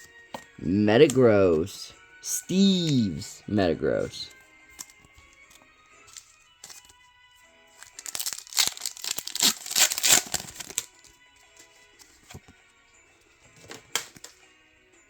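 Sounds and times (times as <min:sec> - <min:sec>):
faint background music: 0:00.0 - 0:15.0
foil wrapper ripping and crinkling: 0:07.8 - 0:11.0.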